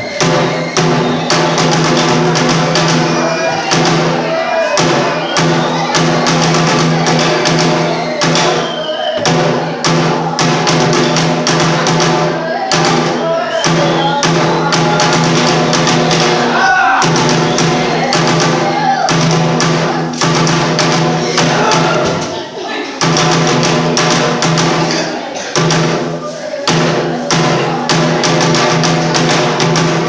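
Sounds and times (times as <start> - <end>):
sliding melody or chanting voice: 0.0 - 20.1
drum beating: 0.0 - 30.0.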